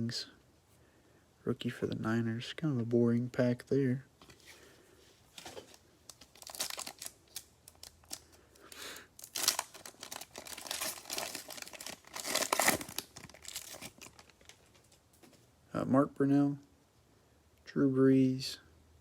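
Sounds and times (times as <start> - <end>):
wrapper crinkling and rustling: 5.3 - 8.4, 9.2 - 15.4
foil pack tearing: 6.3 - 8.2, 9.2 - 14.6.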